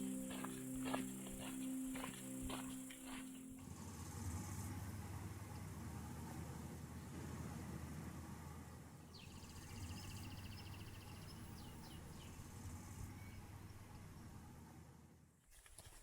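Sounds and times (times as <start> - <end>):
low outdoor rumble: 3.5 - 15.3.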